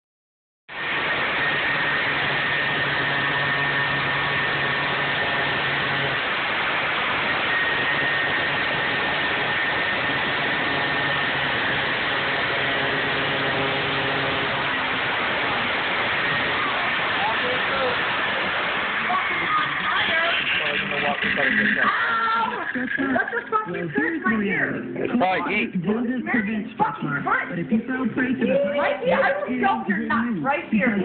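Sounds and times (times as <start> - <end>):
electric grinder cutting metal: 0.7 - 23.7.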